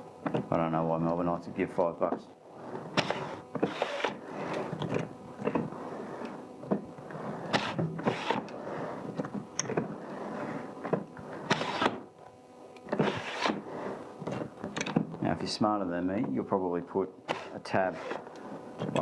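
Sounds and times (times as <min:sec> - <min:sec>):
loose lid shifting: 0:02.8 - 0:05.8, 0:14.2 - 0:15.2, 0:17.3 - 0:19.0.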